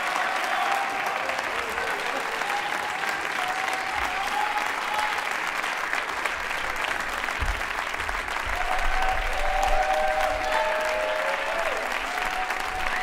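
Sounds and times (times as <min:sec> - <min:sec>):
whistle or cheer: 0:00.0 - 0:05.3, 0:08.5 - 0:13.0
audience applauding: 0:00.0 - 0:13.0.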